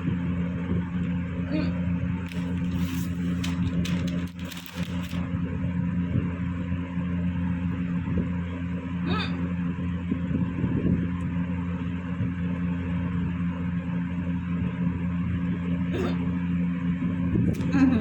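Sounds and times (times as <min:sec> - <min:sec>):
steady low hum: 0:00.0 - 0:18.0
person hiccuping: 0:09.0 - 0:09.5, 0:15.9 - 0:16.3.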